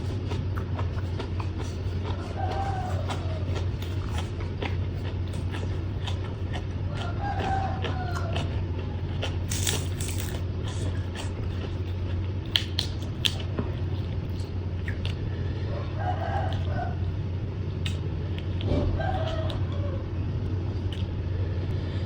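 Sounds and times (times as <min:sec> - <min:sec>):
crunching bites and chewing: 0:00.0 - 0:15.3, 0:17.8 - 0:19.6, 0:20.9 - 0:21.2
steady low hum: 0:00.0 - 0:22.0
distant rooster crowing: 0:02.0 - 0:03.6, 0:06.8 - 0:08.6, 0:15.6 - 0:17.2, 0:18.6 - 0:20.3.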